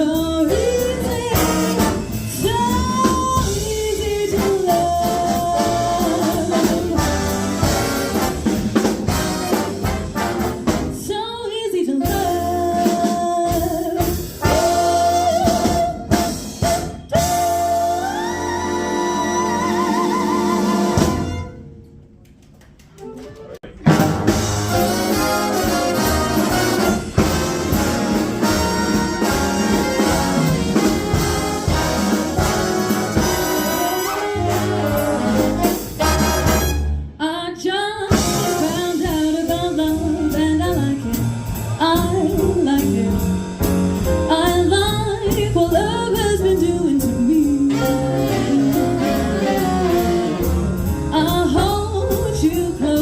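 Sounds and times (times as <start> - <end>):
woman singing: 0.0 - 7.1, 11.0 - 16.0, 37.2 - 41.2, 41.8 - 43.4, 44.3 - 50.3, 51.1 - 53.0
big band jazz: 0.0 - 21.9, 23.0 - 53.0.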